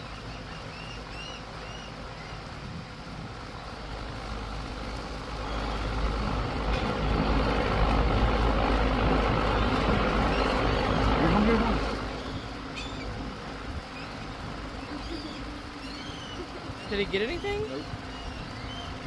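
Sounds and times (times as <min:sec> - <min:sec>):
short high bird calls: 0:12.2 - 0:13.2, 0:13.9 - 0:16.9.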